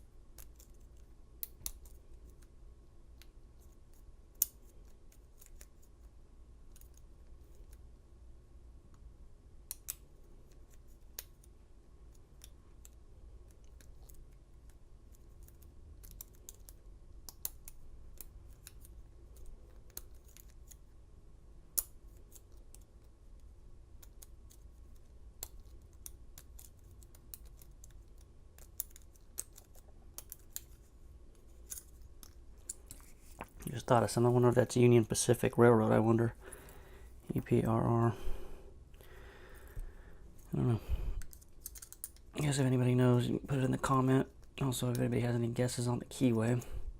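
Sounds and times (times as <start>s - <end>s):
lock pick clicking and scraping: 41.2s - 42.3s.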